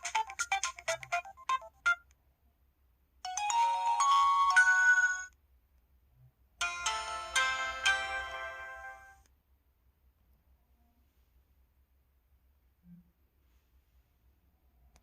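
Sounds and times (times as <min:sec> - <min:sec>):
chiming bell-like phone alert: 0:03.3 - 0:05.3.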